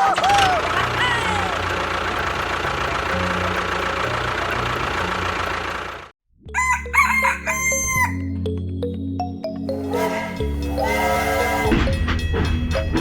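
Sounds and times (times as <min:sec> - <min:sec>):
steady noisy running sound: 0:00.2 - 0:06.1
rooster crowing: 0:06.5 - 0:08.3.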